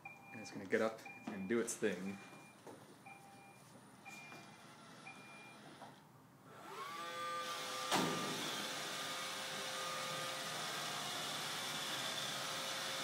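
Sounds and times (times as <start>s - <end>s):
robot vacuum motor whirring: 6.6s - 13.0s.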